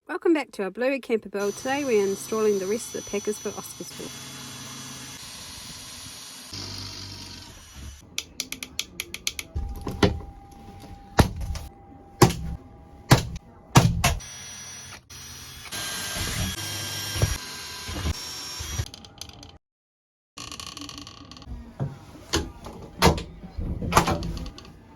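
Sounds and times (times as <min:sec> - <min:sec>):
power tool whirring: 0:01.4 - 0:08.0, 0:14.2 - 0:19.0.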